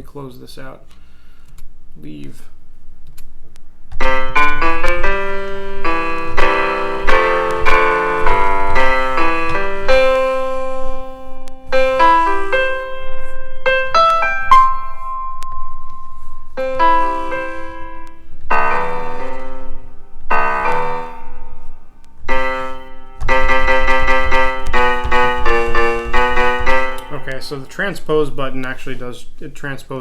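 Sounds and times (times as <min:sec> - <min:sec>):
electronic piano playing: 0:03.9 - 0:28.8.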